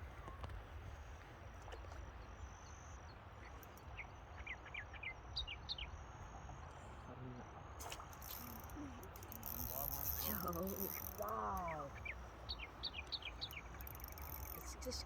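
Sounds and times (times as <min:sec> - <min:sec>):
bird chirping: 0:08.2 - 0:15.0.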